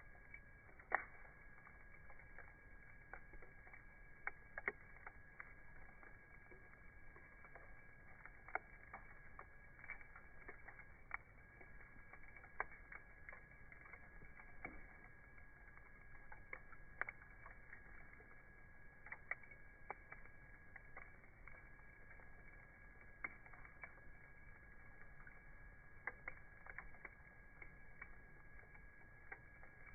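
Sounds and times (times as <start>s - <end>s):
campfire crackling: 0.0s - 29.9s
faint high whine: 0.0s - 29.9s.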